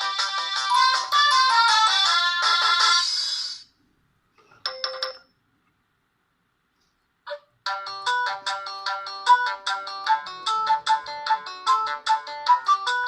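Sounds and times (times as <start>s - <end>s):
polyphonic phone ringtone: 4.6s - 5.3s, 7.3s - 13.0s.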